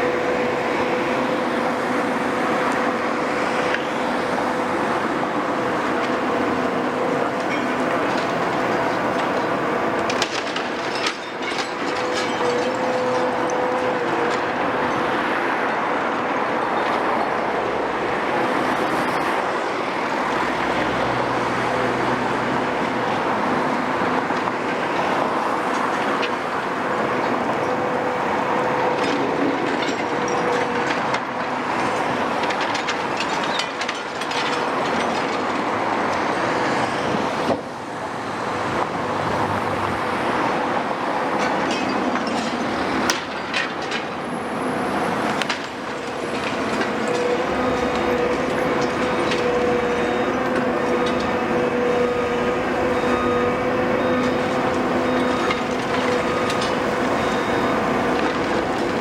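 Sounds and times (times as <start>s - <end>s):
excavator diesel and hydraulic whine: 0.0s - 59.0s
metal and rubble clanking: 5.5s - 15.1s, 27.2s - 37.2s, 40.8s - 59.0s.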